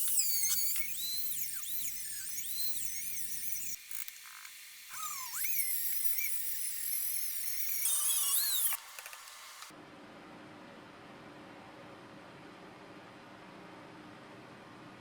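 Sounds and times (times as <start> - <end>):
power tool whining: 0.0 - 9.7.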